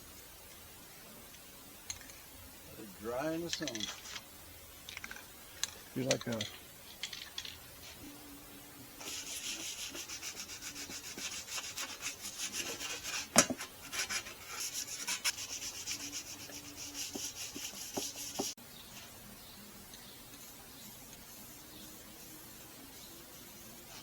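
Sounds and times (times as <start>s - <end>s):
scratchy rubbing on hard surface: 9.0s - 19.1s.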